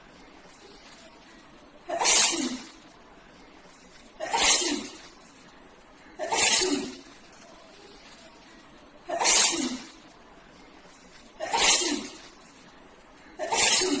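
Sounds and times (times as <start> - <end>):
woman sneezing: 1.9 - 2.7, 4.2 - 5.0, 6.2 - 7.0, 9.1 - 10.0, 11.4 - 12.3, 13.4 - 14.0.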